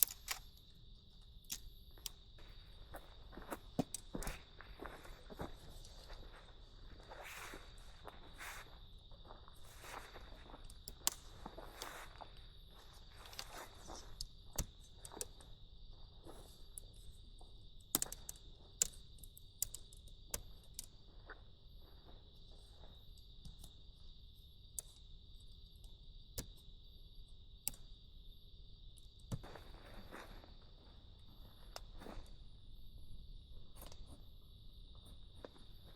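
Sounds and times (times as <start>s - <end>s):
insects trilling: 0.0s - 35.9s.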